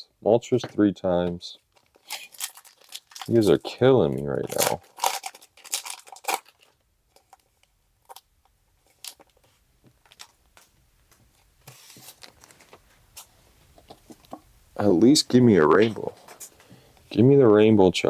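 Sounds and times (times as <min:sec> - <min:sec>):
cards rustling: 0:01.7 - 0:07.5, 0:11.6 - 0:14.4.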